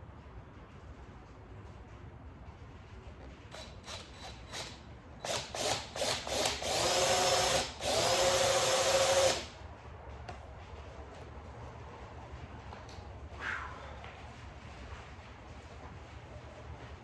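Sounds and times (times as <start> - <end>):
electric drill whining: 3.5 - 9.5.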